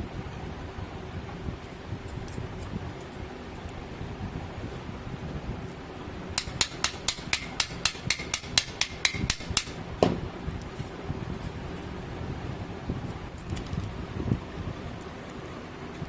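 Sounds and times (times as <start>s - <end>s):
rapid light taps: 6.4s - 10.2s
heavier knock: 6.4s - 10.3s.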